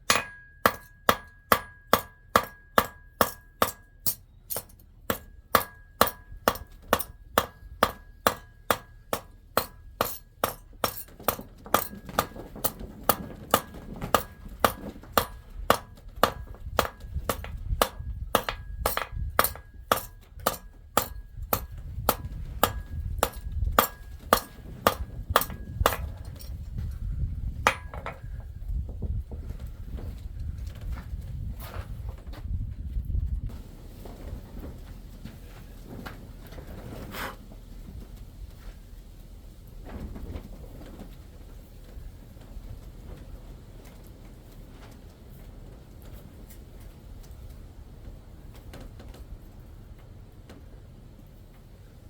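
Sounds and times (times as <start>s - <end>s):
hammer striking anvil: 0.0s - 11.1s, 27.7s - 28.2s.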